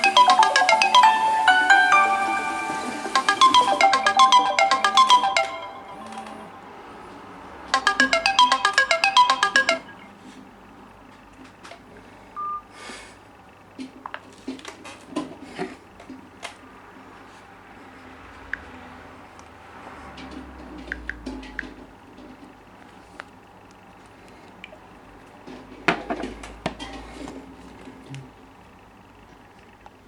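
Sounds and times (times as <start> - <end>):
smartphone ringtone tune: 0.0 - 6.7, 7.7 - 10.1, 12.4 - 12.6
short beep: 12.4 - 12.6.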